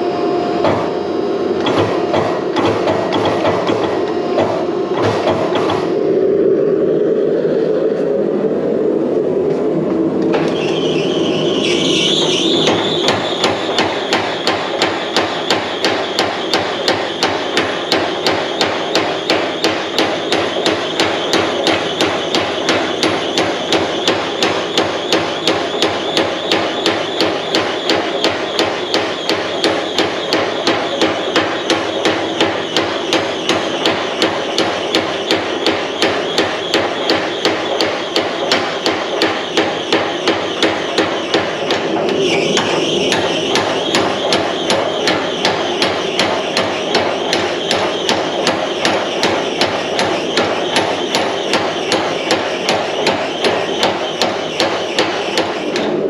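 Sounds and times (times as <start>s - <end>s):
steady rushing noise: 0.0s - 56.0s
hammer blows on steel: 11.6s - 56.0s.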